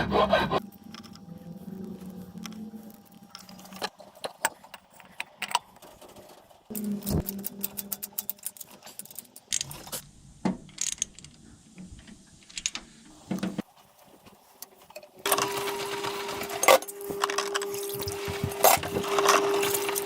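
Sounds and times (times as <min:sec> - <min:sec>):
metal tools and parts clinking: 0:02.3 - 0:10.0, 0:10.7 - 0:11.4.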